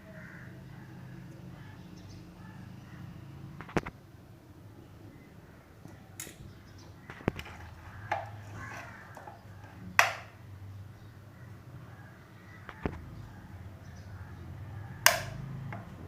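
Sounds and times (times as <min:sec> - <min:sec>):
clicks and taps handling wires: 0:07.1 - 0:10.4, 0:15.0 - 0:16.0.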